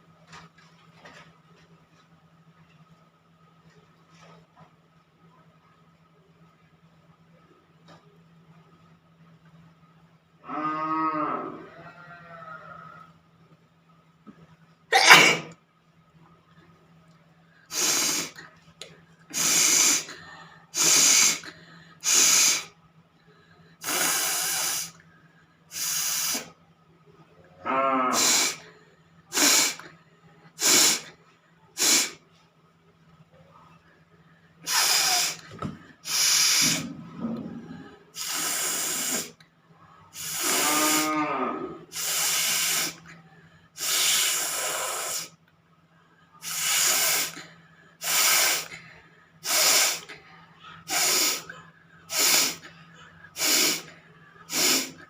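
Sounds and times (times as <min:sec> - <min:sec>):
woman blowing hard through nose: 0:17.7 - 0:18.4, 0:19.3 - 0:20.2, 0:20.8 - 0:22.7, 0:23.8 - 0:25.0, 0:25.7 - 0:26.5, 0:28.2 - 0:28.6, 0:29.3 - 0:29.8, 0:30.6 - 0:31.1, 0:31.8 - 0:32.2, 0:34.6 - 0:35.4, 0:36.0 - 0:36.9, 0:38.2 - 0:39.4, 0:40.2 - 0:41.2, 0:41.9 - 0:43.0, 0:43.8 - 0:45.4, 0:46.4 - 0:47.4, 0:48.0 - 0:48.7, 0:49.4 - 0:50.1, 0:50.9 - 0:51.5, 0:52.1 - 0:52.7, 0:53.4 - 0:53.9, 0:54.5 - 0:55.0.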